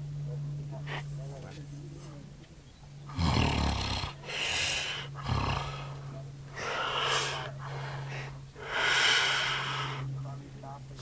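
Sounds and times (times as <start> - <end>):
steady low hum: 0.0 - 11.0
man snoring: 3.1 - 6.0, 6.6 - 7.9, 8.6 - 10.0.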